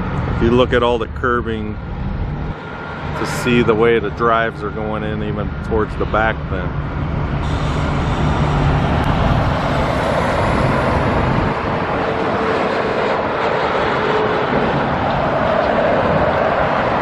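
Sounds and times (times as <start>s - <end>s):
low engine hum: 0.0s - 17.0s
vehicle passing by: 0.0s - 17.0s.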